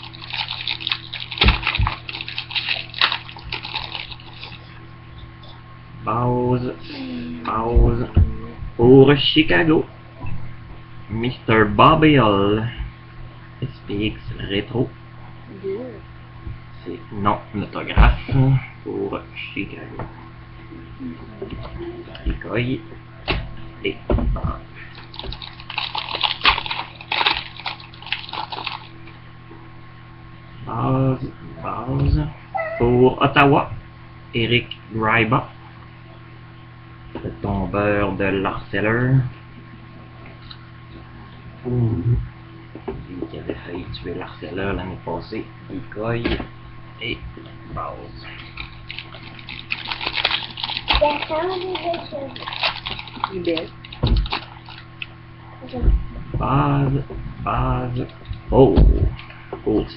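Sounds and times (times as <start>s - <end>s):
foil pack crinkling and rustling: 0.0s - 4.8s, 24.9s - 29.1s, 48.4s - 55.0s
electrical hum: 0.0s - 59.9s.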